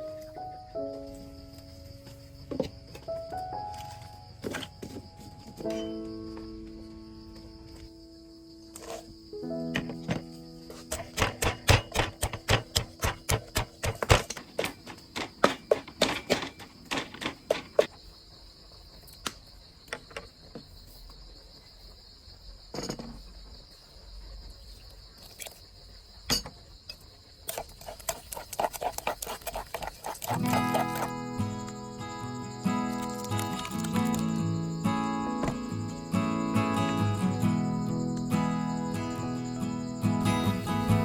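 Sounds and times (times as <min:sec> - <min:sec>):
crickets chirring: 0:00.0 - 0:41.0
sharp knocks of chopping: 0:10.9 - 0:17.7.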